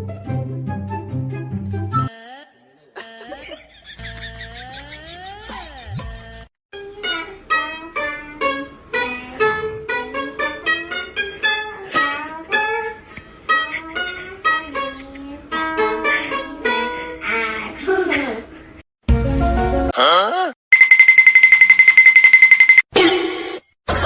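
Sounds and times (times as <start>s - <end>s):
plucked string melody: 6.8s - 17.1s.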